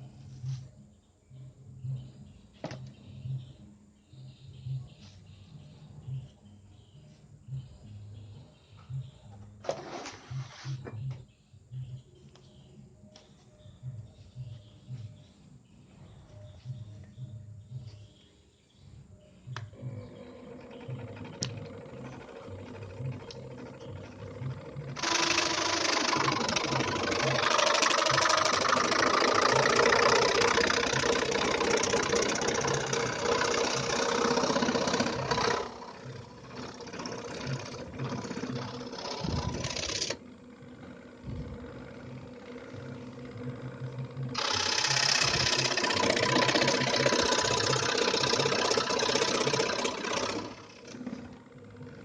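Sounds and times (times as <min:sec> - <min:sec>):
saw motor pulsing: 0:19.8 - 0:52.0
scroll saw cutting: 0:44.4 - 0:51.1.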